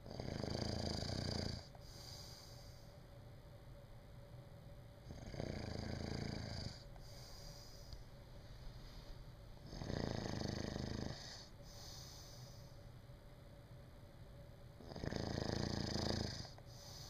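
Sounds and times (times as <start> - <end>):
person snoring: 0.0 - 2.8, 5.1 - 7.9, 9.6 - 12.7, 14.8 - 17.0.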